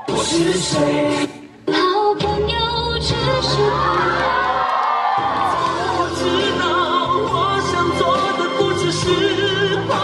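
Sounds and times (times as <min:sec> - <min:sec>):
crowd cheering and yelling: 0:00.0 - 0:00.9, 0:03.2 - 0:07.4
loud music playback: 0:00.0 - 0:10.0.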